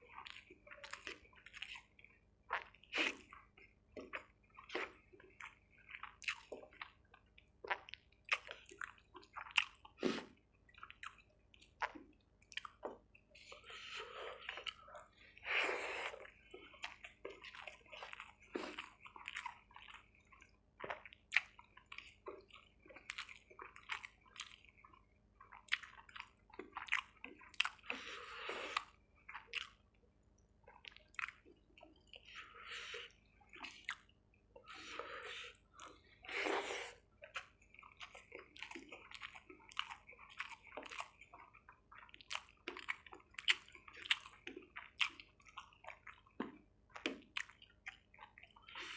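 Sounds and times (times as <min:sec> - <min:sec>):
wet chewing and smacking: 0:00.0 - 0:48.9.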